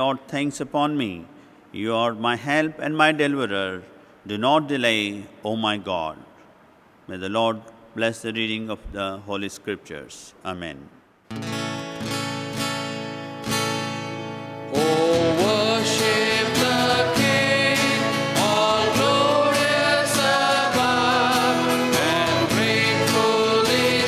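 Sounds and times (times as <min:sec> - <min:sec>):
guitar playing chords: 0:11.3 - 0:24.0
people singing: 0:14.7 - 0:24.0.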